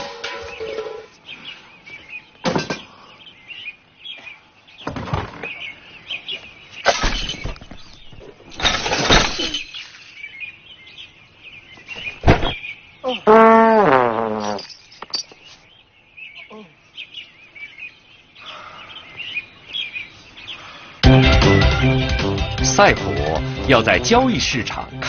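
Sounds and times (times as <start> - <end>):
faint bird chirping: 0.3 - 8.5, 9.3 - 21.0
cartoon crashes and clatters: 6.8 - 7.8, 8.5 - 10.1.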